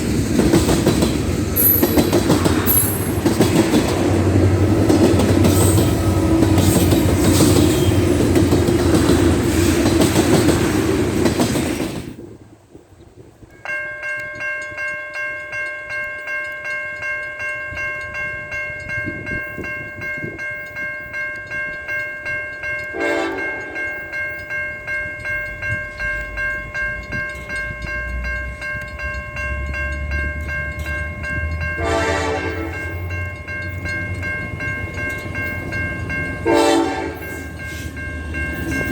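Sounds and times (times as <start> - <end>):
railroad crossing bell dinging: 0.0 - 11.8, 13.4 - 38.9
diesel locomotive low rumble: 0.0 - 13.4, 17.7 - 38.9
freight train rumbling on rails: 0.0 - 13.5, 17.6 - 38.9
locomotive horn blasts: 22.9 - 24.0, 31.8 - 33.0, 36.4 - 37.5.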